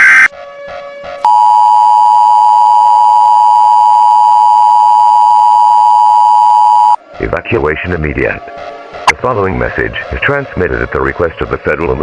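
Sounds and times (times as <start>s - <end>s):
two-tone alarm: 1.2s - 7.0s.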